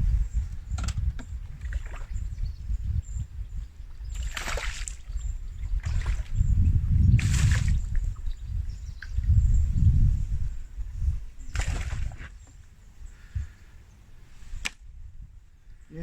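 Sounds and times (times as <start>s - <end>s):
wind rumbling on microphone: 0.0s - 16.0s
water splashes: 4.1s - 5.1s, 5.7s - 6.5s, 7.2s - 8.2s, 11.5s - 12.3s.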